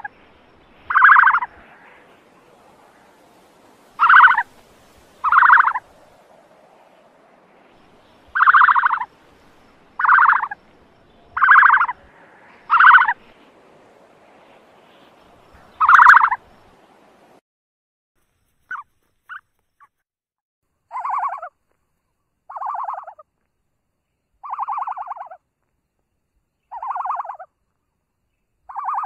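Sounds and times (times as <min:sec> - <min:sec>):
ostrich buzzy calls: 0:00.0 - 0:17.4, 0:22.5 - 0:23.2, 0:24.4 - 0:25.4.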